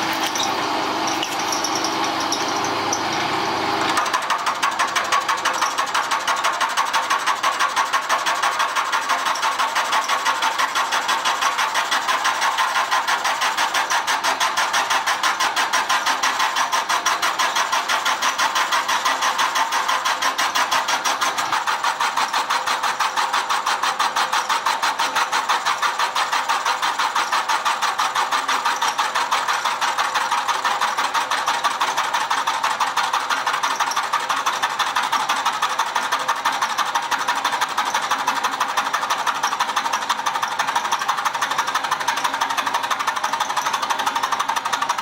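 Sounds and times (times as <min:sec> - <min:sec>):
milling machine cutting metal: 0:00.0 - 0:35.4.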